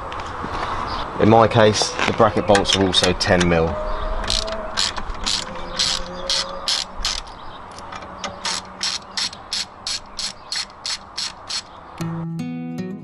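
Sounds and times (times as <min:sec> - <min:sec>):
socket ratchet clicking: 0:04.2 - 0:11.7.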